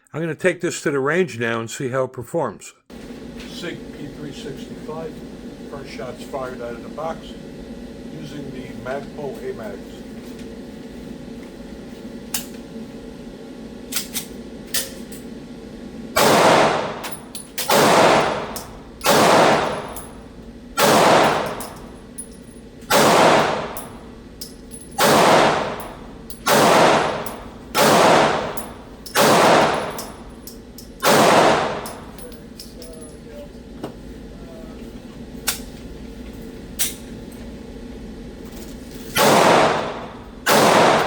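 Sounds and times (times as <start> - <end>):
pistol shots: 16.2 - 19.9, 20.8 - 21.7, 22.9 - 23.8, 25.0 - 25.8, 26.4 - 30.2, 31.0 - 32.0, 39.2 - 41.0.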